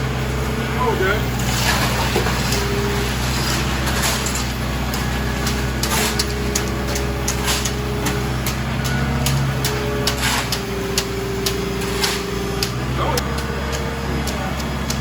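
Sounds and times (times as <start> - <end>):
engine running steadily: 0.0 - 15.0.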